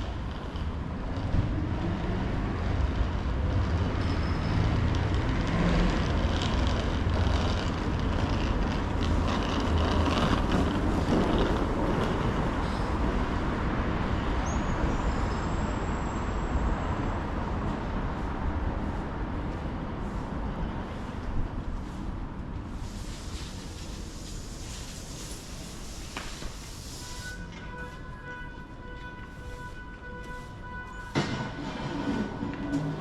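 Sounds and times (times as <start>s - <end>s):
vehicle engine rumble: 0.0s - 14.2s
city hum: 0.0s - 33.0s.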